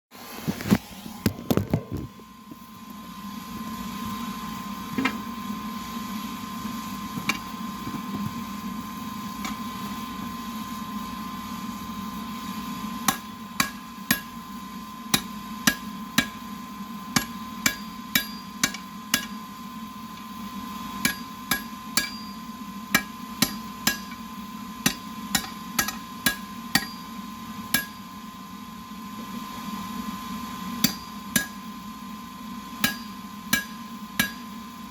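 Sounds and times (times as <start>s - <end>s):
steady hum: 0.2s - 34.9s
hammer striking metal on anvil: 13.1s - 14.4s, 15.1s - 16.5s, 17.2s - 19.4s, 21.0s - 28.1s, 30.8s - 31.7s, 32.8s - 34.6s.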